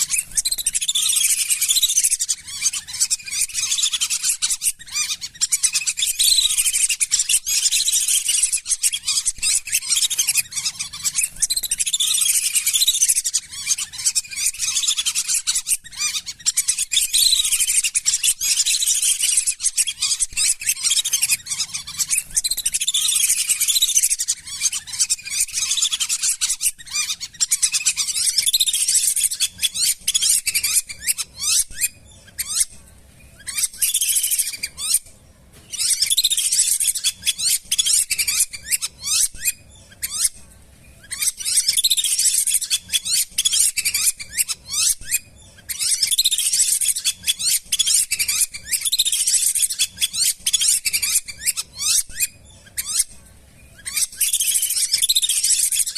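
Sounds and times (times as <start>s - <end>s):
ducks whistling calls: 0.0s - 32.7s.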